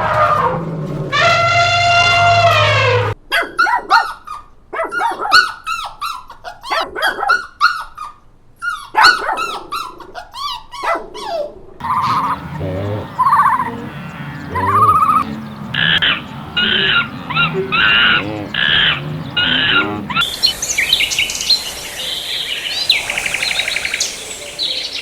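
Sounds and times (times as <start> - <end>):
long held animal call: 0.0 - 3.2, 11.8 - 25.0
warbling animal call: 0.0 - 3.2, 9.5 - 25.0
dog barking in high yaps: 3.3 - 11.5.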